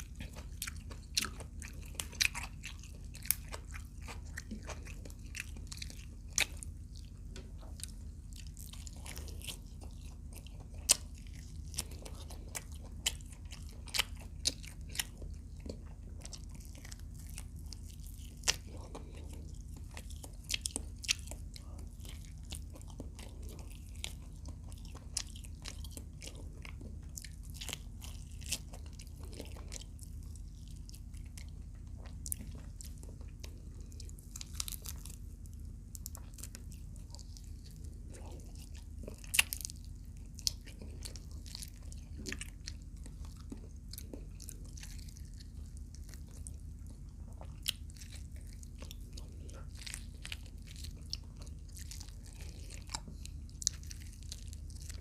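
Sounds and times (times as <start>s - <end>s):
chewing and crunching: 0.0s - 55.0s
steady low hum: 0.0s - 55.0s.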